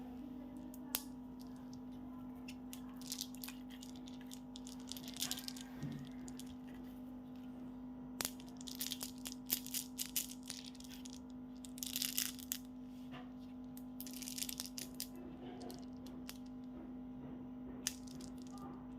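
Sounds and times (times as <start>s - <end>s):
steady low hum: 0.0s - 18.9s
packaging crinkling and clicking: 3.0s - 6.6s.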